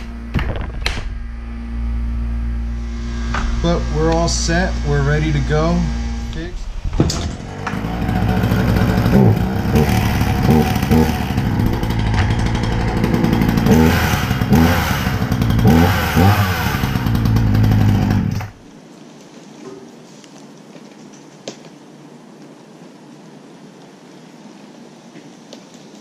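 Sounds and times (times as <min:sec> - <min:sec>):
chainsaw revving: 0:07.4 - 0:18.6.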